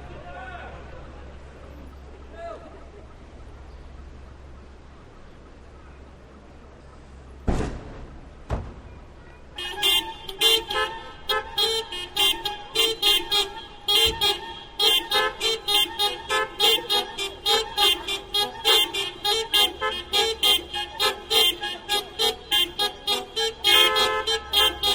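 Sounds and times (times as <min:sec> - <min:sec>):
thumps: 0:07.4 - 0:09.3
car horns hooting: 0:09.5 - 0:24.9.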